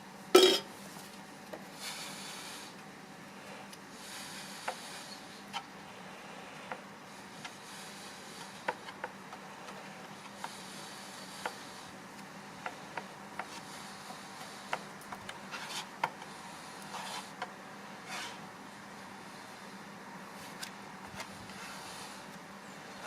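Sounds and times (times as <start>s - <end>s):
spreader scraping: 18.0s - 18.4s.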